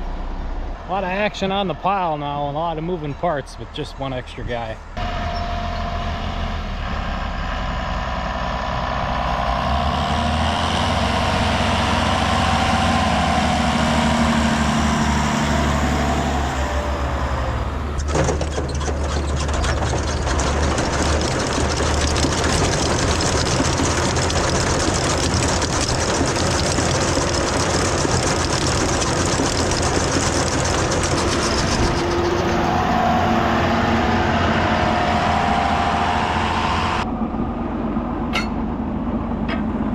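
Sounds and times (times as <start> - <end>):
diesel tractor engines running: 0.0 - 39.9.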